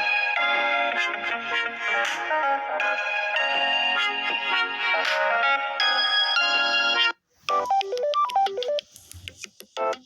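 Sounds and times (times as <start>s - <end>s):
electronic ringtone melody: 5.8s - 9.0s.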